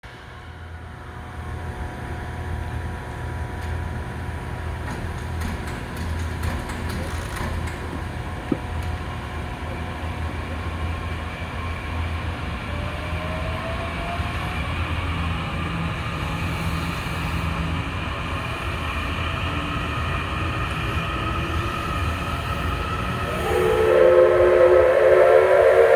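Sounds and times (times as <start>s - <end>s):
train equipment humming: 14.6s - 25.9s.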